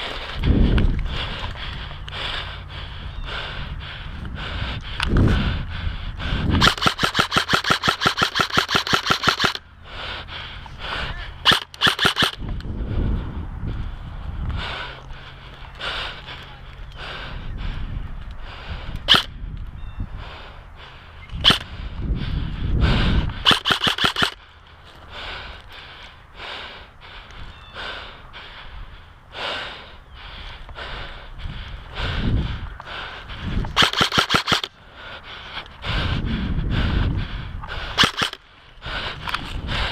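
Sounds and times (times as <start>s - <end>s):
airsoft rifle firing: 6.6s - 9.6s, 11.4s - 12.4s, 23.4s - 24.4s, 33.8s - 34.7s, 38.0s - 38.4s.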